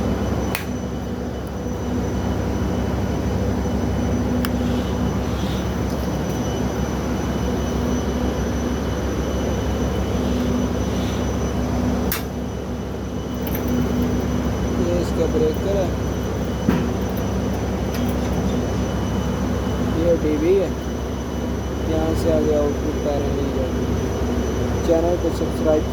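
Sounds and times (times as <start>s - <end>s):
industrial machinery drone: 0.0s - 25.9s
sharp click: 0.5s - 0.8s, 12.1s - 12.3s.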